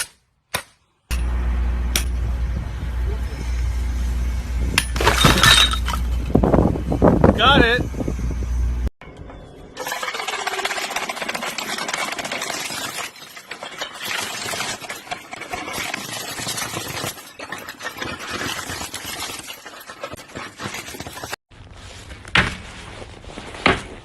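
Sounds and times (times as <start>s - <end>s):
machine rattling: 9.8s - 21.4s.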